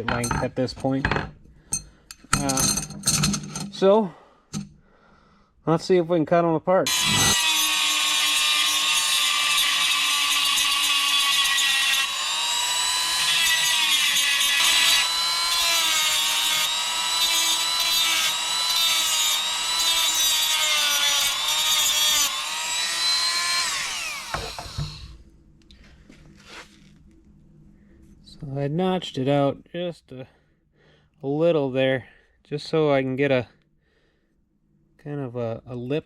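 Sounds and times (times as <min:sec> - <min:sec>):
rotary tool grinding metal: 0:06.9 - 0:25.2.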